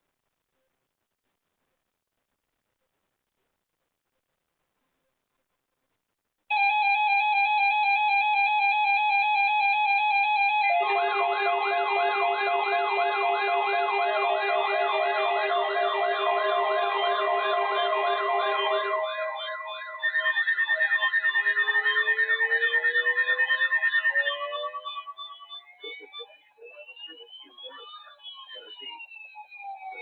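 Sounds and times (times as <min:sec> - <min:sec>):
fast yelping siren sweep: 0:09.0 - 0:24.9
pulsing buzzy electronic tone: 0:10.5 - 0:20.5.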